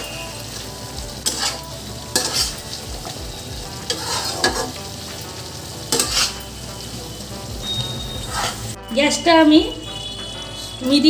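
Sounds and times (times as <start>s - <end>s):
food sizzling in a pan: 0.0s - 11.0s
spatula scraping a pan: 1.2s - 3.2s, 3.9s - 6.6s, 7.7s - 8.8s.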